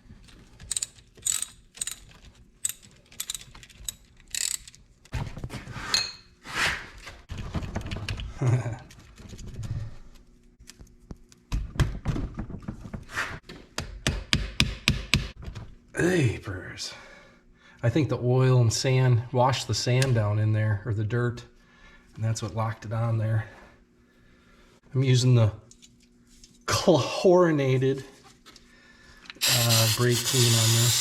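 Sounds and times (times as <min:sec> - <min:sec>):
metallic clicks of tools: 0:00.6 - 0:04.8.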